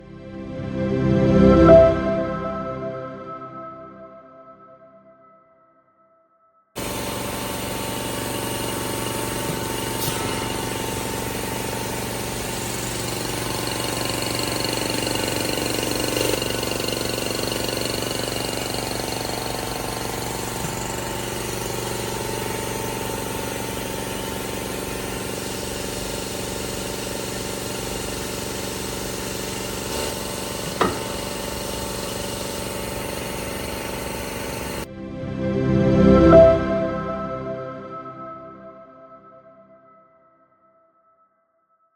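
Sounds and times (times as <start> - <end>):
circular saw motor humming: 6.8 - 34.9.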